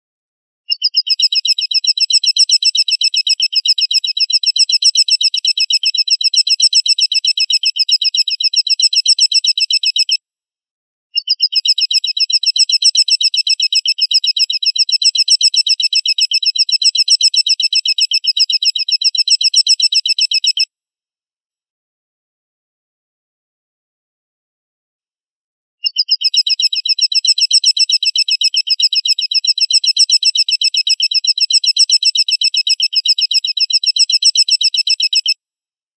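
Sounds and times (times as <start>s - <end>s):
bird of prey chattering trill: 0.7s - 10.2s, 11.2s - 20.6s, 25.8s - 35.4s.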